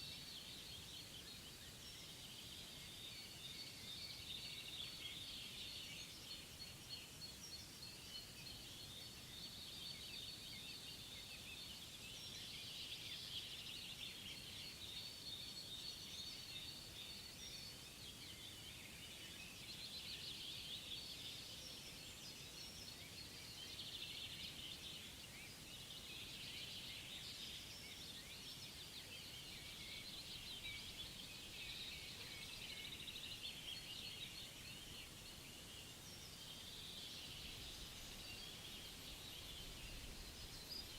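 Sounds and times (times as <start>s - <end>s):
low steady hiss: 0.0s - 40.9s.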